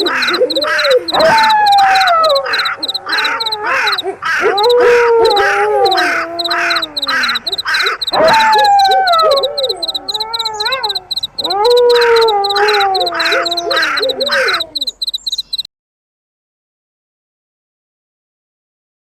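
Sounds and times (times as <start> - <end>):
wolves howling: 0.0 - 15.0
crows cawing: 0.0 - 15.6
crickets chirping: 0.0 - 15.7.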